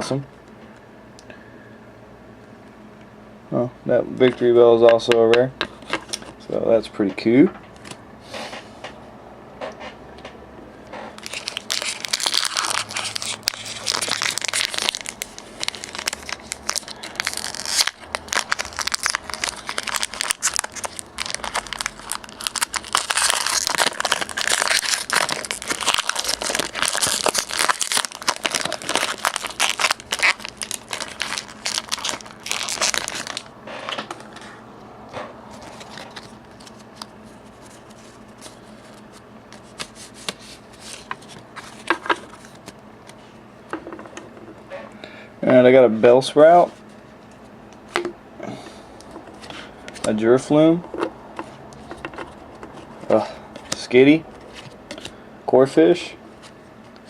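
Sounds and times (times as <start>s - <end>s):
foil wrapper crinkling and tearing: 11.2s - 34.4s, 35.5s - 42.7s
cards rustling and clicking: 11.2s - 34.5s, 35.5s - 42.8s.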